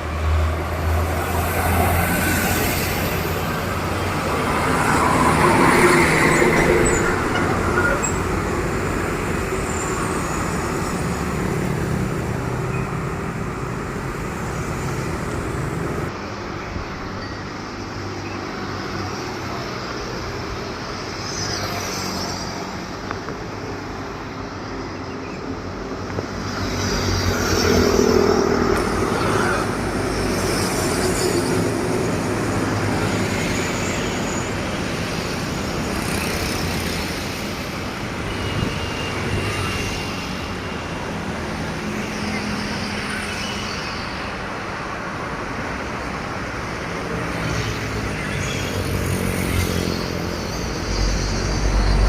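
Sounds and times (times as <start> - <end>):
heavy trucks passing: 0.0 - 16.1.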